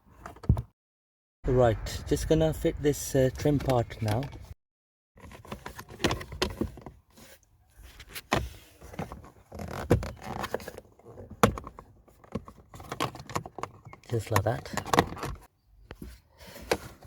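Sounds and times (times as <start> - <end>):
plastic rustling and scraping: 5.2 - 17.0.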